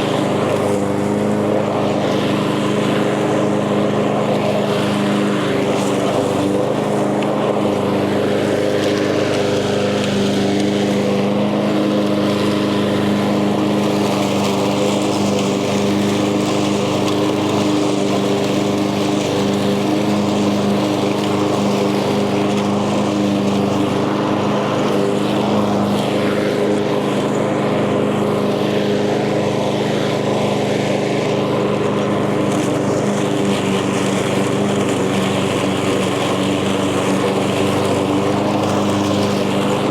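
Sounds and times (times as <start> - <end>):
lawn mower engine cutting grass: 0.0 - 39.9.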